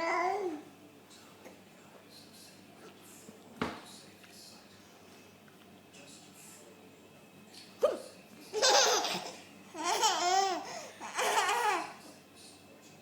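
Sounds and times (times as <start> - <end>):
baby giggling: 7.8 - 12.0.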